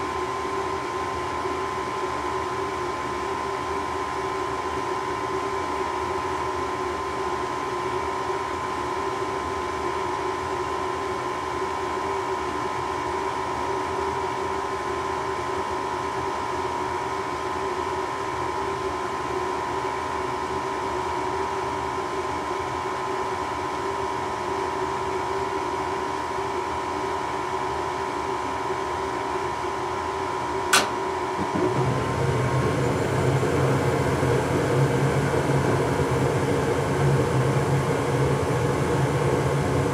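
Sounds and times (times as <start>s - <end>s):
furnace humming and whining: 0.0s - 39.9s
sharp click: 30.7s - 31.1s
burner lighting: 30.8s - 39.9s.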